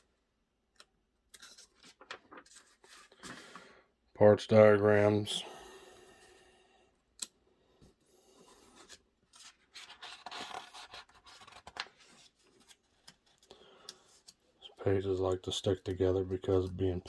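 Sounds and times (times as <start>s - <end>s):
paper pages turning: 1.4s - 3.5s, 8.8s - 13.5s.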